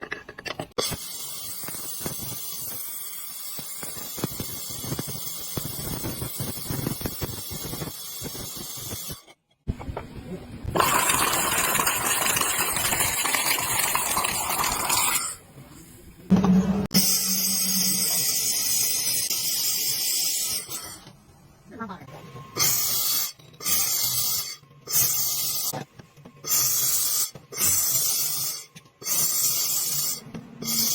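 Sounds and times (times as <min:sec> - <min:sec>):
laser welder hissing and crackling: 0:00.8 - 0:09.2, 0:17.0 - 0:21.0, 0:22.6 - 0:25.8, 0:26.5 - 0:30.9.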